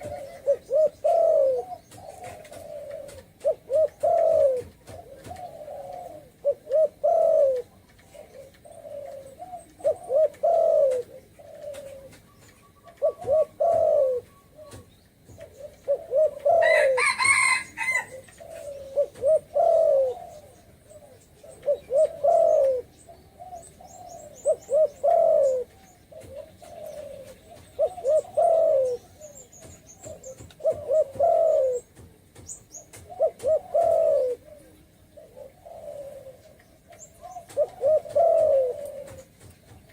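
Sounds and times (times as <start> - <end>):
dove cooing: 0.0 - 32.1, 32.9 - 39.9.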